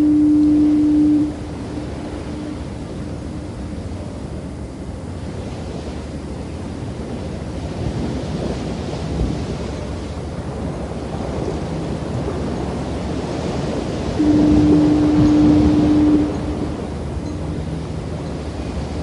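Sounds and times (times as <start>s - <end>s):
wind: 0.0s - 19.0s
surf washing on a beach: 5.0s - 19.0s.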